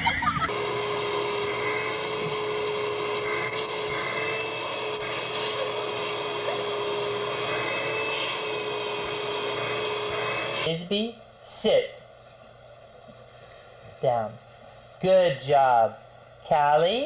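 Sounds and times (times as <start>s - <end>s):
steady motor drone: 0.0s - 10.8s.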